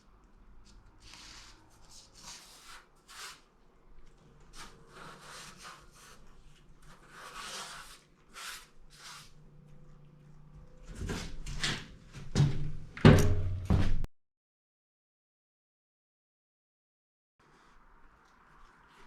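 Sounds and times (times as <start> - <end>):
rubbing and scraping strokes: 0.6 - 10.1.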